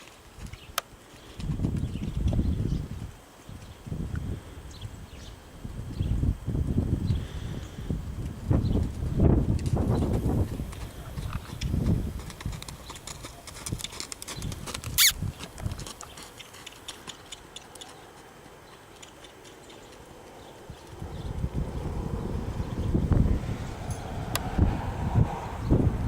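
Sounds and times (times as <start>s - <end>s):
horse hoofbeats clip-clop: 0.0s - 3.8s, 8.2s - 21.9s.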